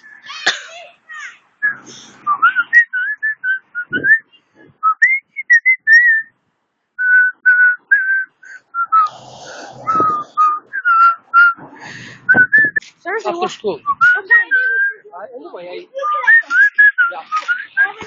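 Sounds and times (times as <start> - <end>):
person whistling short notes: 1.6 - 6.3, 7.0 - 9.1, 9.8 - 11.6, 12.2 - 12.8, 16.4 - 18.0.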